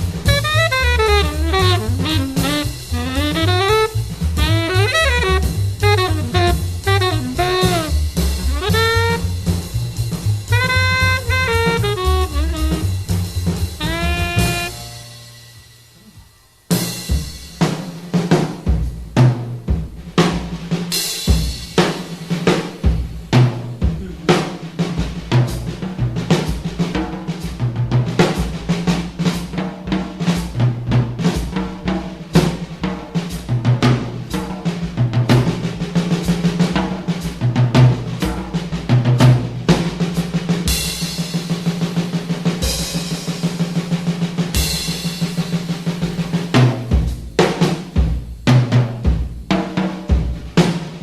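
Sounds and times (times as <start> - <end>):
bass line: 0.0 - 15.4
drum kit beat: 0.0 - 51.0.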